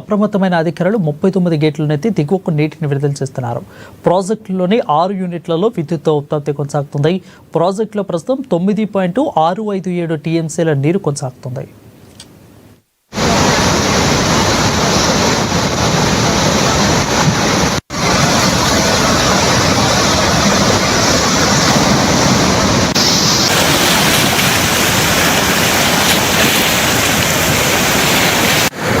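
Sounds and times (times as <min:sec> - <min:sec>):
water rushing through spillway: 0:13.2 - 0:29.0.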